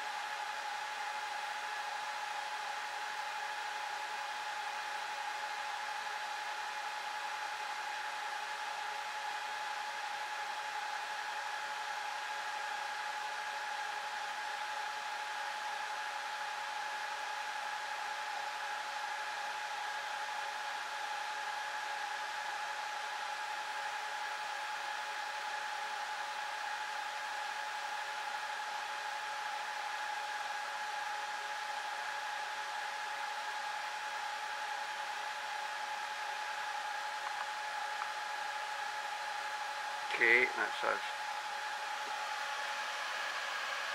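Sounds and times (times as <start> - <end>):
steady high whine: 35.2 - 43.9
server cooling fans rushing: 36.0 - 43.9.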